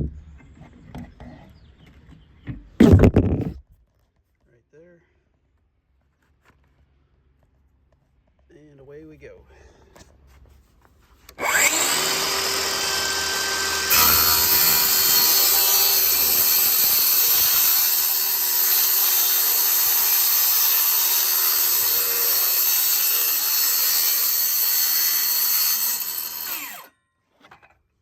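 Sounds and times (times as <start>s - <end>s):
circular saw cutting laminate: 11.3s - 26.9s.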